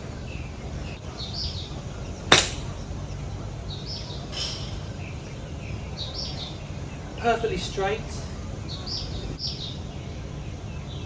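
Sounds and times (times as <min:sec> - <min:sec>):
golf club hitting ball: 0:02.3 - 0:02.8.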